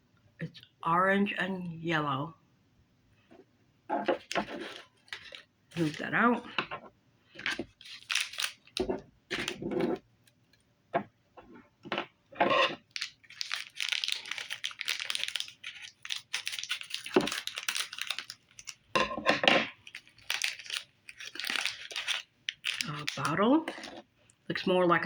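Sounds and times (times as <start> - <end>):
plastic packaging torn and crinkled: 4.1 - 6.1, 7.4 - 10.0, 12.5 - 24.1.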